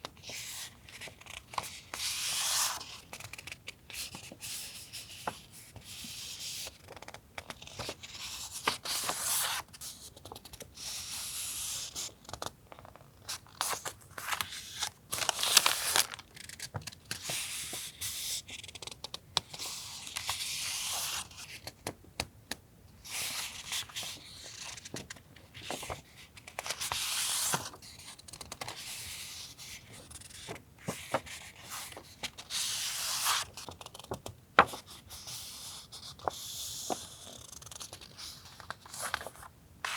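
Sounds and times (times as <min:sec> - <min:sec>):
paper rustling and crinkling: 0:12.2 - 0:17.9, 0:23.1 - 0:39.9.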